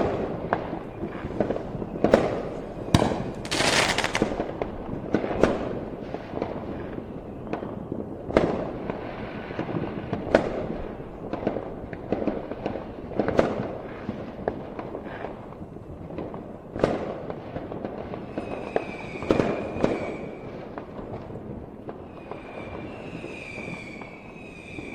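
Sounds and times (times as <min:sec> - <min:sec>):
fireworks bangs: 0:00.0 - 0:24.9
small firework pops: 0:00.0 - 0:24.9
high falling firework whistles: 0:00.8 - 0:04.5, 0:18.2 - 0:20.7, 0:22.0 - 0:24.9.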